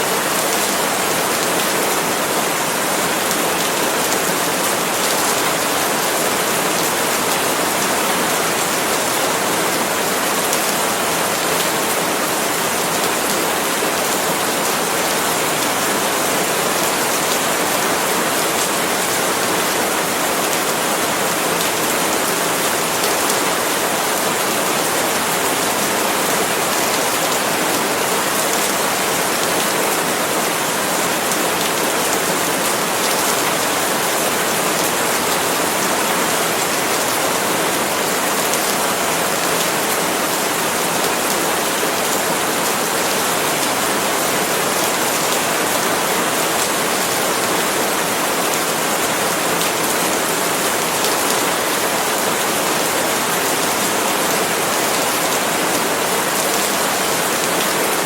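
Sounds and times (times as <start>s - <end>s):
rain falling on leaves: 0.0s - 58.0s.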